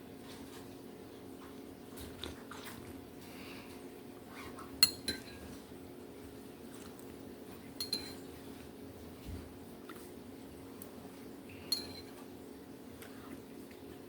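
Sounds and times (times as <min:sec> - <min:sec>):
light clinks against a dish: 0:07.8 - 0:08.2, 0:11.7 - 0:12.1.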